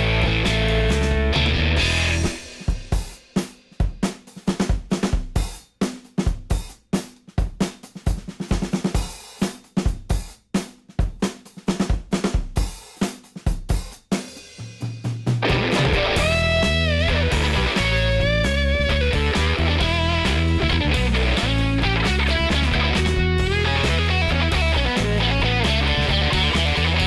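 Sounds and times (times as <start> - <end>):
electric guitar: 0.0 - 2.6, 15.4 - 27.0
rock drum kit playing: 0.0 - 27.0.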